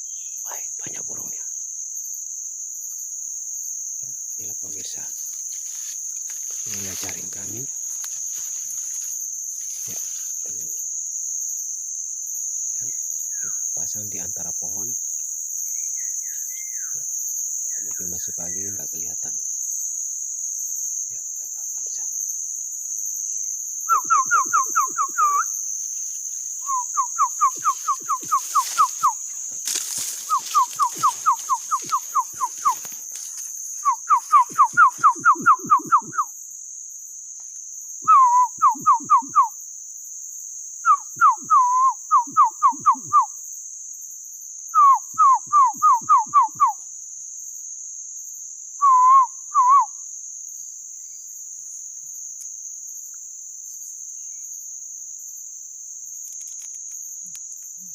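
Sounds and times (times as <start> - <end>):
high insect buzz: 0.0 - 57.9
man whistling bird call: 23.9 - 25.5, 26.6 - 29.2, 30.3 - 32.8, 33.8 - 36.3, 38.0 - 39.5, 40.8 - 43.3, 44.8 - 46.8, 48.8 - 50.0.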